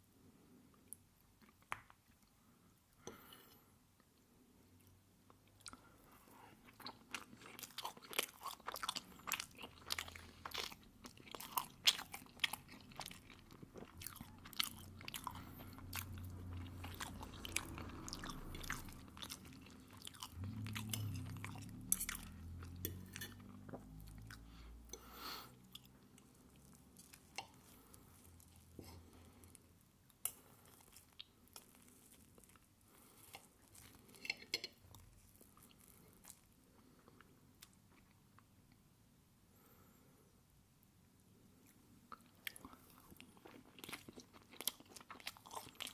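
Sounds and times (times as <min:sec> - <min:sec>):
close chewing with wet mouth clicks: 0:06.7 - 0:24.4, 0:42.1 - 0:45.9.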